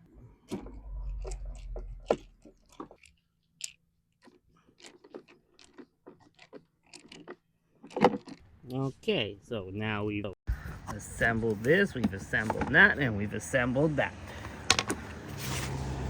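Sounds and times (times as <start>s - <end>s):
plastic parts clicking and creaking: 0.4s - 8.8s, 14.4s - 15.2s.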